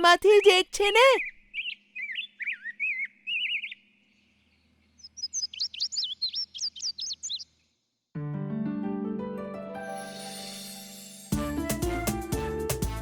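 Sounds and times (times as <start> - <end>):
small birds chirping: 0.0 - 7.7.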